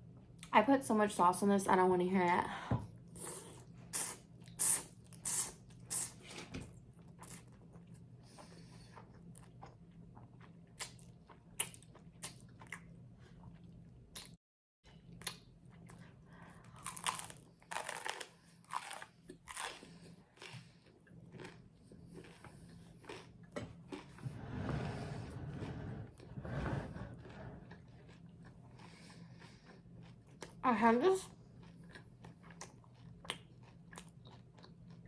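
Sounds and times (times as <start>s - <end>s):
crunchy bread being eaten: 15.1s - 24.2s.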